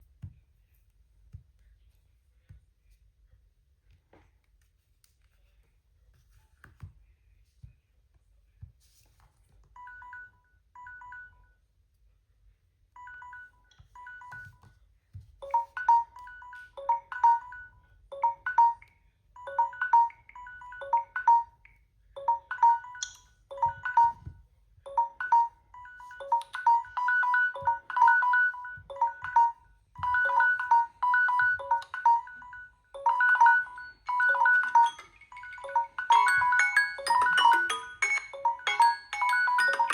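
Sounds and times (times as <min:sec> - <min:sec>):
phone alarm melody: 0:15.4 - 0:24.3, 0:24.9 - 0:39.9.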